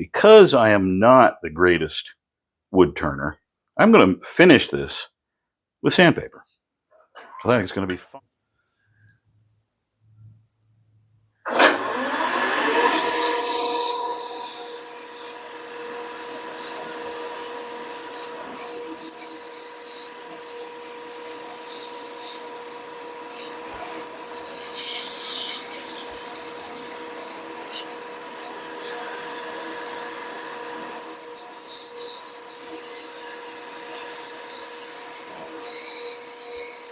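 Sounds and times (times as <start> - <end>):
lathe humming: 11.5 - 36.9
sandpaper scraping spinning wood: 13.0 - 36.9.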